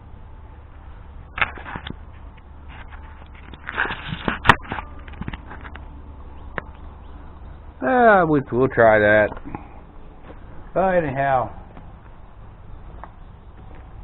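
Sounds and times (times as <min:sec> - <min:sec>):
rustling: 0:01.0 - 0:07.8.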